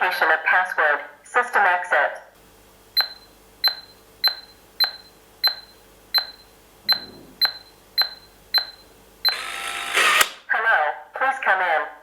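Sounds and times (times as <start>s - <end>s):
keypad beeps with clicks: 3.0s - 9.5s.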